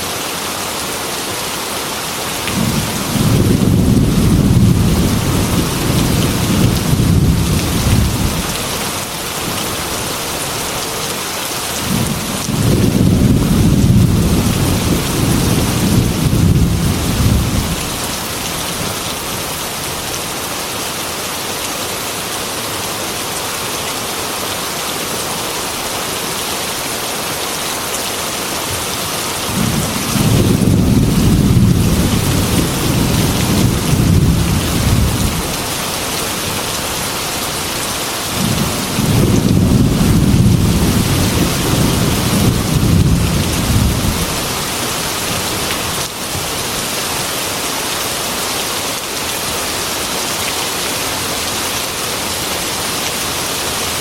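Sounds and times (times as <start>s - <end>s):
heavy rain on glass window: 1.5s - 20.8s, 27.3s - 48.1s
low thunder rumbles: 2.5s - 8.6s, 11.8s - 19.0s, 29.5s - 35.7s, 38.3s - 44.5s.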